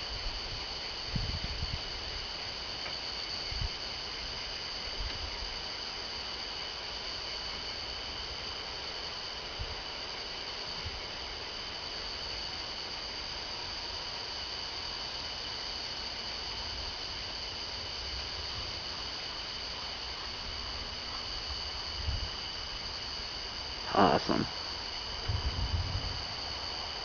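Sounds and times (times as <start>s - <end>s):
night insects chorus: 0.0s - 27.0s.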